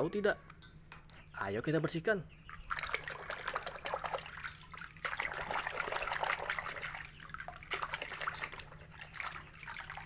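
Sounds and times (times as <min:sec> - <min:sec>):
water splashing and trickling: 0:02.4 - 0:10.0.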